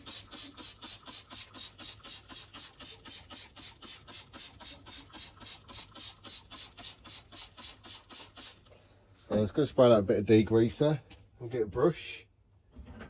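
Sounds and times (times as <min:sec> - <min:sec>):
spray bottle squirting: 0:00.0 - 0:08.7.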